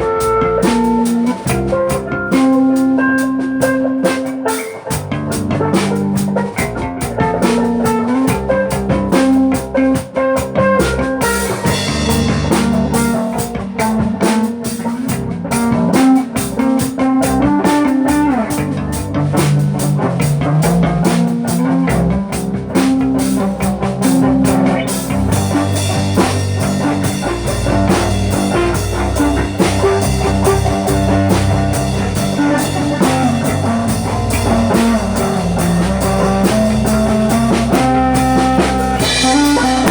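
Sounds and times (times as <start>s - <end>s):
low bass notes: 0.0s - 4.3s, 4.9s - 39.9s
drum kit: 0.0s - 39.9s
electric guitar: 0.0s - 39.9s
cymbals: 24.5s - 39.9s.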